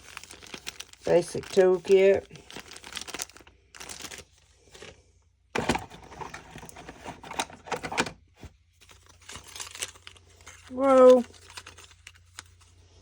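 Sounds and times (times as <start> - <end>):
packaging clicking and rustling: 0.0 - 4.9, 5.6 - 12.8.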